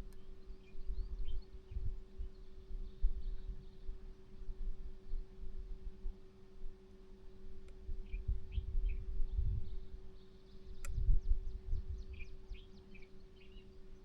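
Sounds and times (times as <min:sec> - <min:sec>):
faint steady hum: 0:00.0 - 0:14.0
wind buffeting microphone: 0:07.9 - 0:10.0, 0:10.8 - 0:12.3
small birds chirping: 0:08.0 - 0:14.0.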